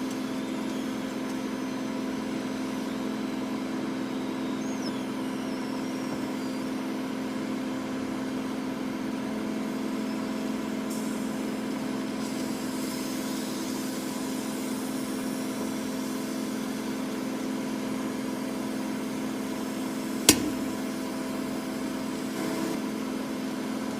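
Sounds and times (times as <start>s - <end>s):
microwave oven humming: 0.0s - 23.9s
sharp pop: 20.3s - 20.8s.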